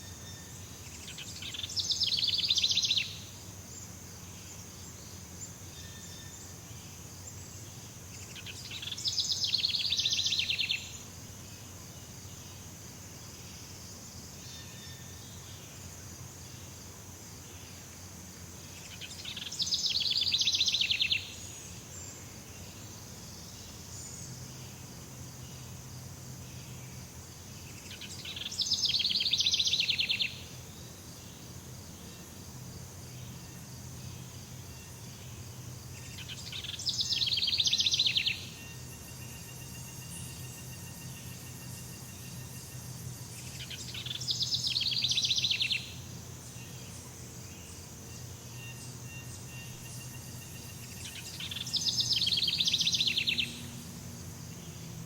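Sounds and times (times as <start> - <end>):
rapidly pulsing insect trill: 0.0 - 55.0
high-pitched insect drone: 36.1 - 46.0, 48.6 - 55.0.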